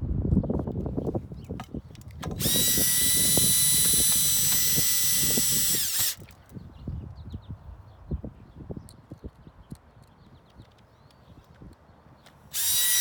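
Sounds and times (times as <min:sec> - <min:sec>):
power drill whining: 0:02.2 - 0:06.2, 0:12.5 - 0:13.0.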